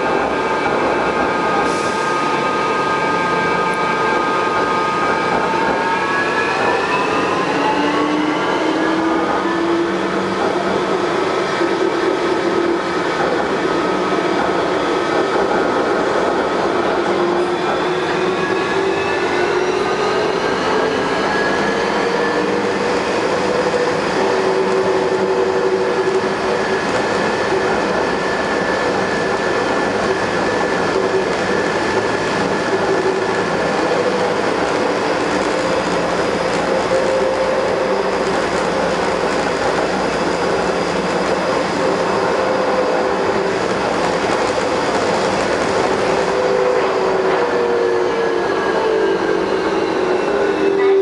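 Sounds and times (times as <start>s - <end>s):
train rolling rumble: 0.0s - 51.0s
wavering train whine: 0.0s - 51.0s.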